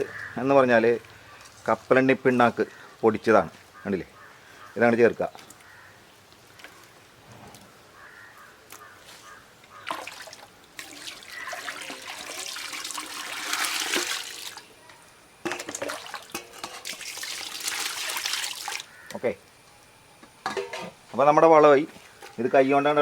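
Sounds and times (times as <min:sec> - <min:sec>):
slurry splashing in a container: 0:09.8 - 0:14.6.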